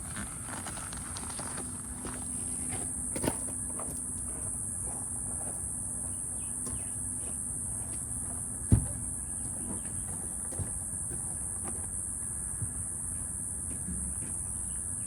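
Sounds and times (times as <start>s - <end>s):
outdoor background noise: 0.0s - 15.0s.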